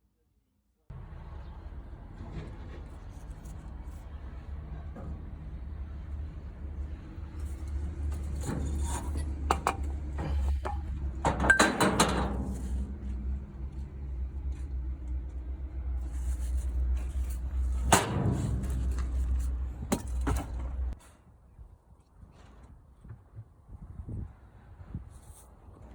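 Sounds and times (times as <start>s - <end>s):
metal clanks and knocks: 7.9s - 13.3s, 17.1s - 21.0s.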